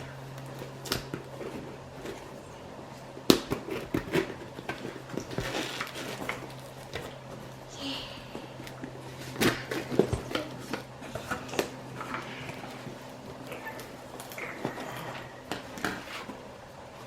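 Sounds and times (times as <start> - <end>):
packing crinkling rustles: 0.0 - 7.7.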